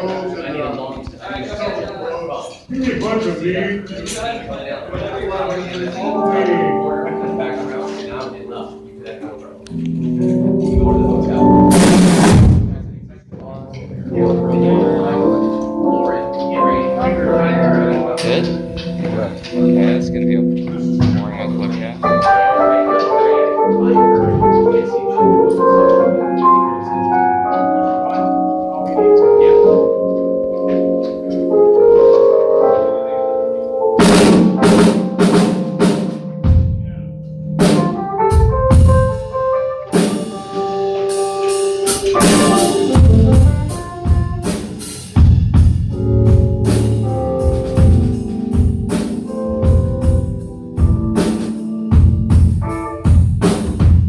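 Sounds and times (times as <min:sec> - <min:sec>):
keyboard playing chords: 0:05.2 - 0:13.0, 0:13.8 - 0:54.0
drum kit playing: 0:09.7 - 0:13.0, 0:16.6 - 0:27.3, 0:34.0 - 0:54.0.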